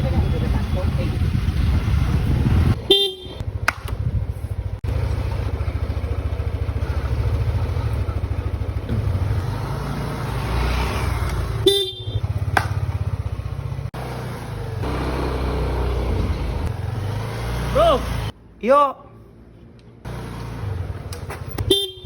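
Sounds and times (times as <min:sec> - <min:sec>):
vehicle engine idling: 0:00.0 - 0:09.8, 0:11.7 - 0:16.8.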